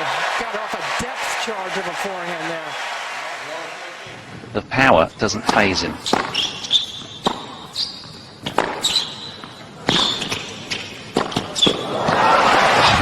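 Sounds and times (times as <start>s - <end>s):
ball bouncing on court: 5.4s - 11.8s
tennis ball hitting racquet: 5.4s - 11.8s
short high squeaks: 6.0s - 8.2s.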